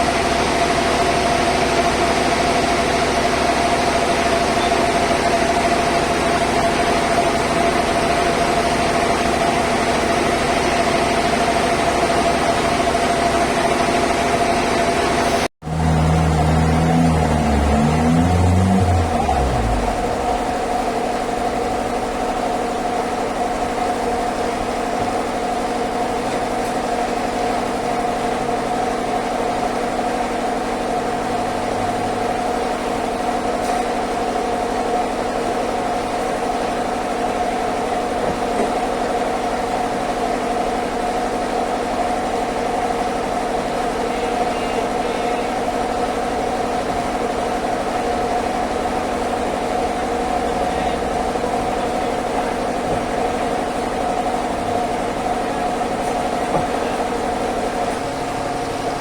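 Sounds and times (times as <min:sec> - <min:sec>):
band saw drone and whine: 0:15.4 - 0:22.8.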